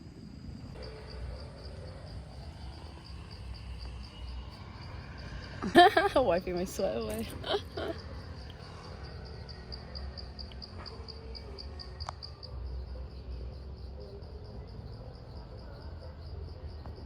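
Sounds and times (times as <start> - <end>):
insect chirping: 0.0 - 17.0.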